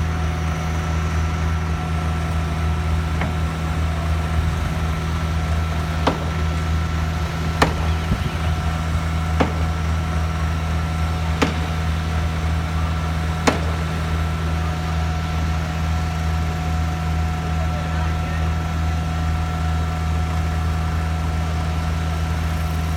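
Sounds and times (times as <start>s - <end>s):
machine engine hum: 0.0s - 22.9s
sharp mechanical knocks: 3.1s - 14.6s.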